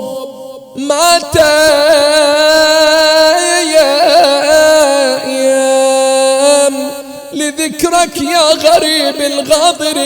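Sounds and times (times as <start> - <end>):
man chanting: 0.0 - 10.0.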